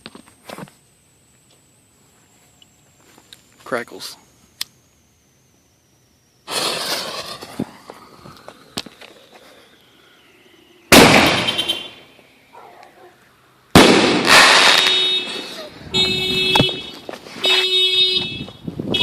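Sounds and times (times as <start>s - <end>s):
firework shells banging and crackling: 6.5s - 9.8s, 10.9s - 12.3s, 13.7s - 17.6s.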